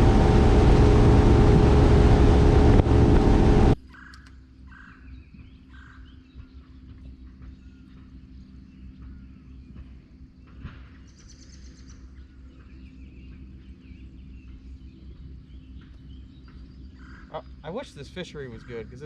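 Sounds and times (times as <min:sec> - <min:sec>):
low steady hum: 0:00.0 - 0:19.0
birds chirping and calling: 0:11.2 - 0:19.0.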